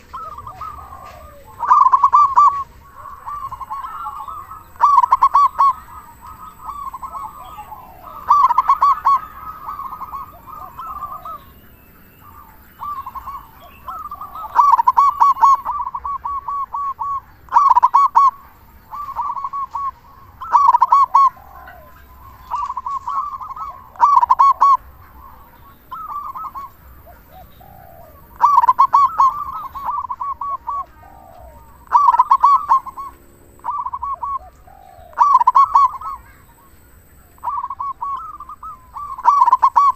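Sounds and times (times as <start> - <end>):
dove cooing rolling notes: 0.0 - 39.9.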